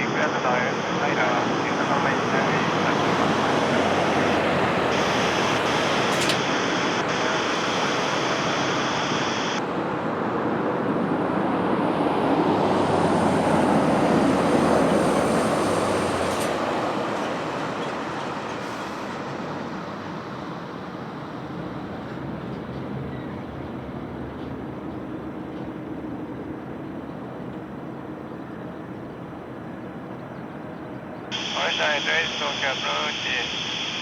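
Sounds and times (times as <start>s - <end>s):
jet airliner landing: 0.0s - 23.2s, 31.3s - 34.0s.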